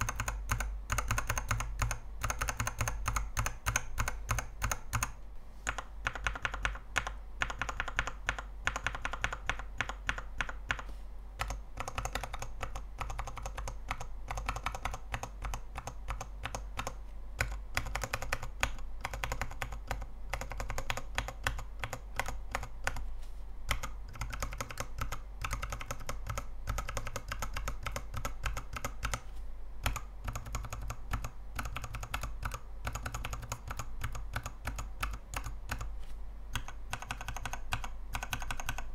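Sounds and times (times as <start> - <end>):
mechanical keyboard switches clacking: 0.0 - 5.1, 36.5 - 38.9.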